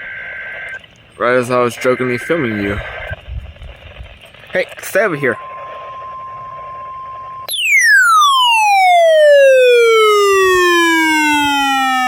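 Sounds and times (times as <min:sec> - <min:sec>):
electronic tone sliding down: 0:07.4 - 0:12.0.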